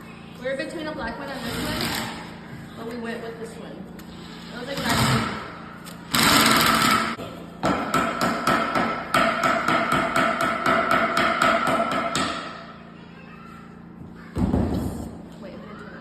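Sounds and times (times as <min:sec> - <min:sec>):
power tool whining and knocking: 0:04.5 - 0:07.2.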